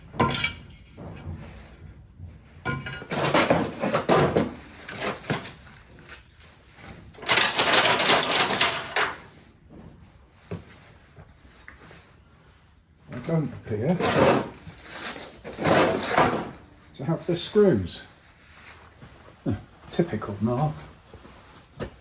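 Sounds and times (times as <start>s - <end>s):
rummaging through metal parts: 2.6s - 6.2s, 7.1s - 9.3s, 13.8s - 16.6s.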